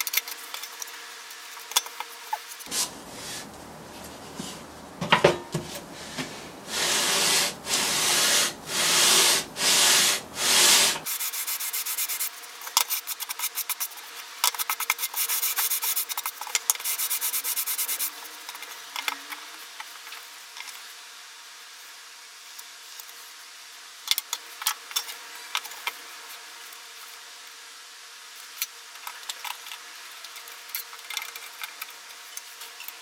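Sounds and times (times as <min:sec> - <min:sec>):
board being hand-sanded: 0:06.0 - 0:12.3.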